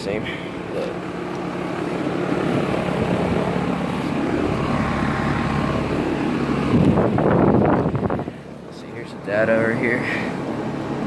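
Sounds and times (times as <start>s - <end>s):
compressor hum: 0.0s - 11.0s
condenser fan rushing: 0.0s - 11.0s.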